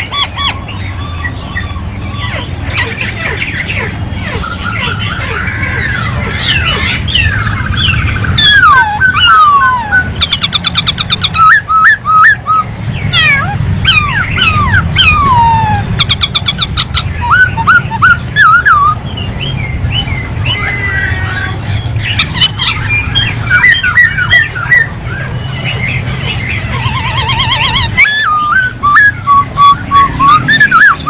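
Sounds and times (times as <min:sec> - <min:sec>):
bird singing whistled notes: 0:13.9 - 0:20.6, 0:21.9 - 0:31.0.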